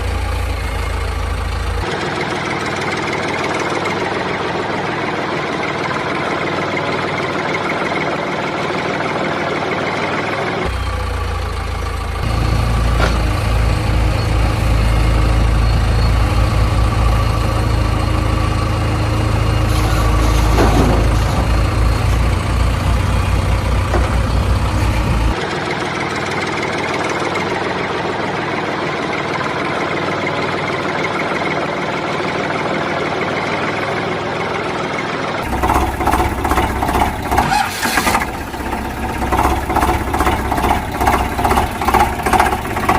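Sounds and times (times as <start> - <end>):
deep engine rumble: 0.0 - 5.1, 10.5 - 29.2, 35.0 - 42.9
vehicle engine running: 0.0 - 42.9.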